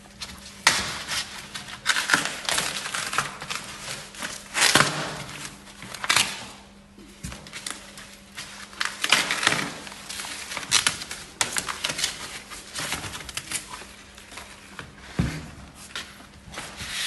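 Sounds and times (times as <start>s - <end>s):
packing material rustling: 0.4s - 6.5s.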